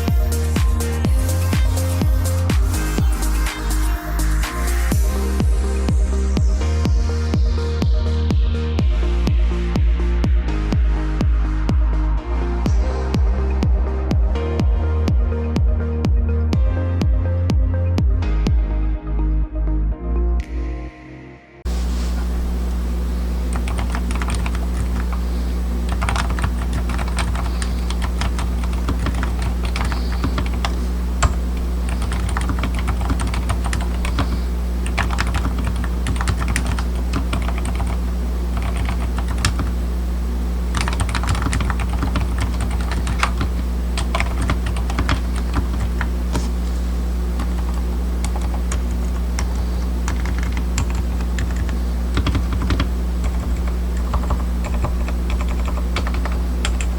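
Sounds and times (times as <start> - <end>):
low hum: 0.0 - 20.3, 21.7 - 56.9
mechanical keyboard typing: 23.5 - 25.2, 25.9 - 38.0, 38.6 - 39.7, 40.7 - 46.1, 47.4 - 56.9.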